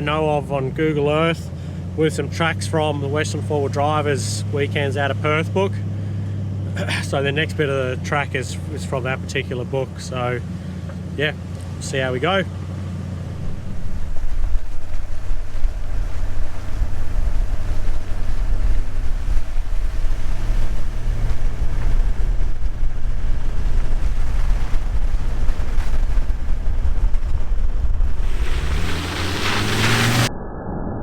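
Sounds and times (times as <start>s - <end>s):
vehicle engine and tyres rumbling: 0.0s - 31.0s.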